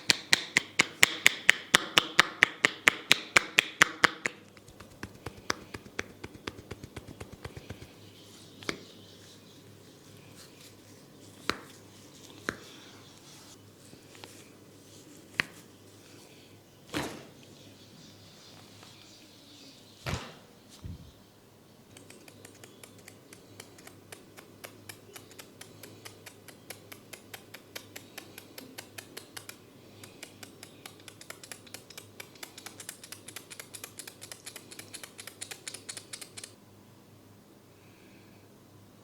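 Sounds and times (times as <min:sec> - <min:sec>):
hair crackling clicks: 0:21.9 - 0:36.6.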